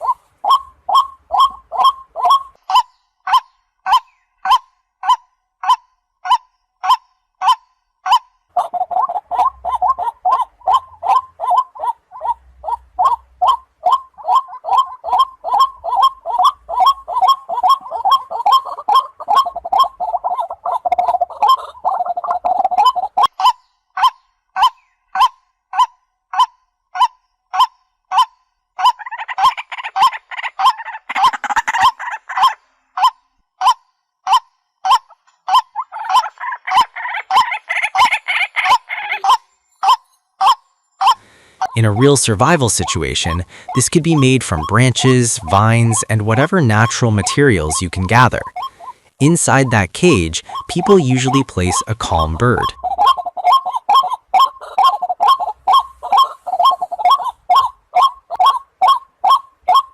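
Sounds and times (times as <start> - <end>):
second bird calling: 8.1 - 25.3, 34.3 - 59.9
bird honking call: 8.6 - 23.3, 40.4 - 59.9.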